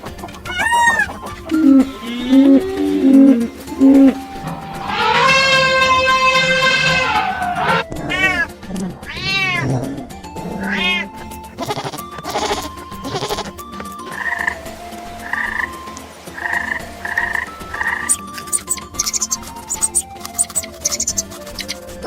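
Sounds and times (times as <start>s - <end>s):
simple melody of steady notes: 0.0s - 5.9s
animal cries: 0.0s - 22.0s.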